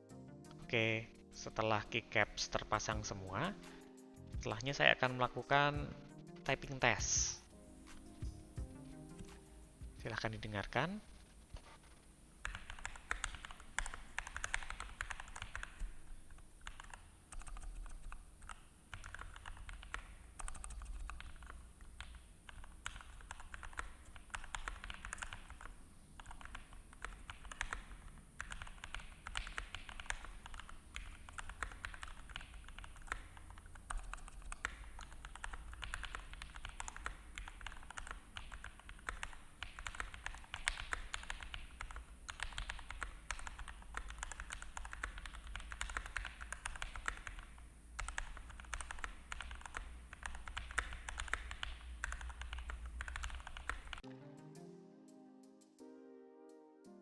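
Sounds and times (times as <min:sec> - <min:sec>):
mechanical keyboard typing: 0:10.0 - 0:54.0.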